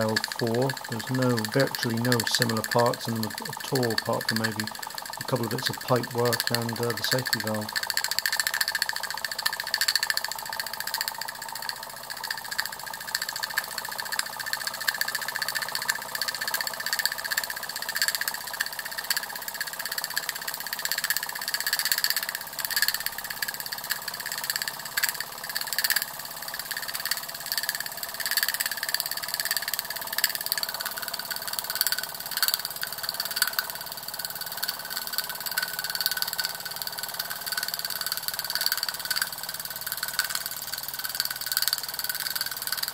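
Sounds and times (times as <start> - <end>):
toy steam engine running: 0.0 - 42.9.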